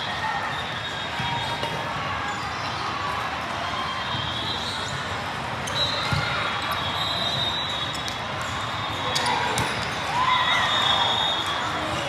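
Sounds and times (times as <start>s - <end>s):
echoing crowd chatter: 0.0s - 12.0s.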